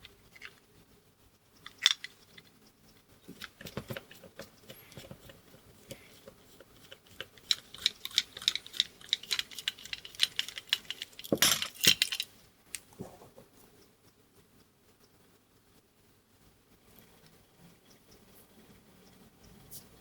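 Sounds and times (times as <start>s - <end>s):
metal parts clinking on workbench: 7.8s - 12.3s.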